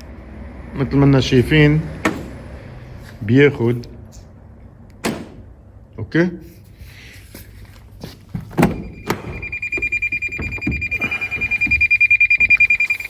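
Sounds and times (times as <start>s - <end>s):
car warning buzzer beeping: 8.6s - 13.0s.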